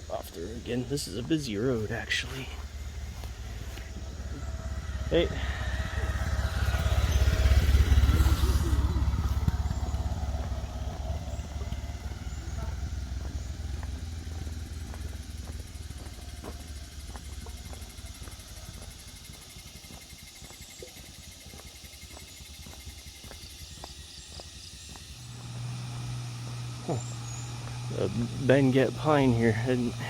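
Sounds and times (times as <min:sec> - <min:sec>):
vehicle engine passing: 0:00.6 - 0:20.1, 0:25.2 - 0:30.0.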